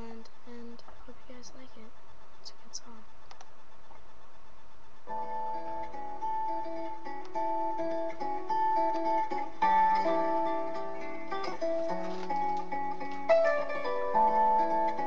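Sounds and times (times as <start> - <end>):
guitar picking melodic notes: 5.1 - 15.0.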